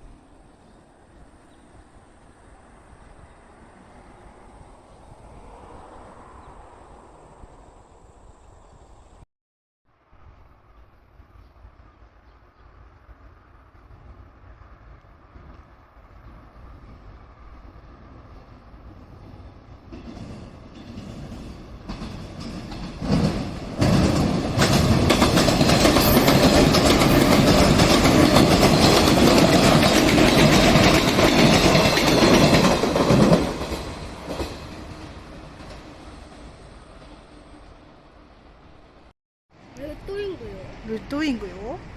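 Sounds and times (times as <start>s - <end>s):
train wheels clattering on rails: 19.0s - 37.6s.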